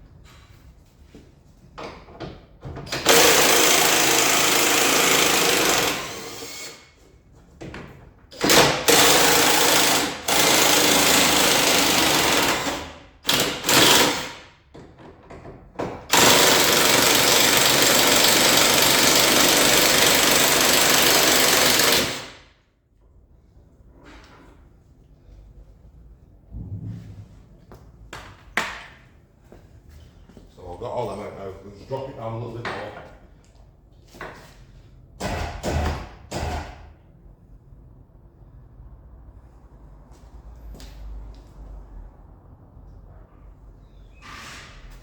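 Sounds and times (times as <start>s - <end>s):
impact wrench hammering: 3.0s - 6.8s, 8.4s - 14.8s, 15.9s - 22.4s.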